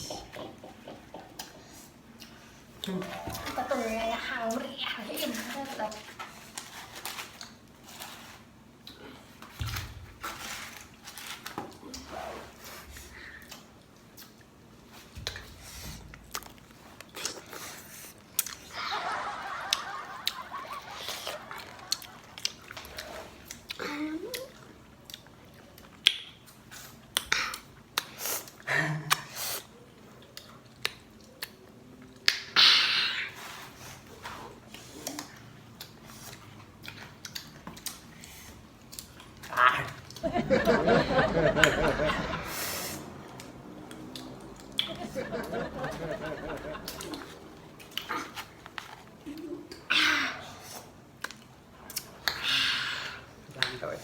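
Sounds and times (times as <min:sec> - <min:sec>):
wet chewing and sucking: 0:10.5 - 0:18.7, 0:20.9 - 0:40.2, 0:42.4 - 0:44.9
loud suck of air: 0:42.4 - 0:43.2.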